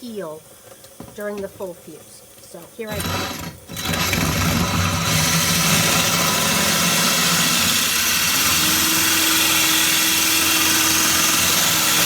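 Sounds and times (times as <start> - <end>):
electric drill grinding into glass: 2.9 - 12.0.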